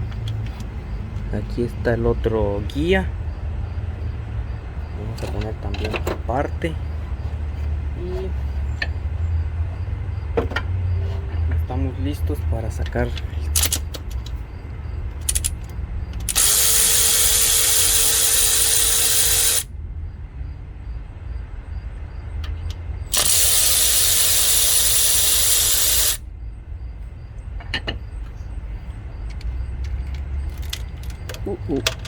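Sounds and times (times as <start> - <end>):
small clicks: 13.1 - 14.4, 15.2 - 19.6
impact driver running: 16.2 - 19.7, 23.1 - 26.2.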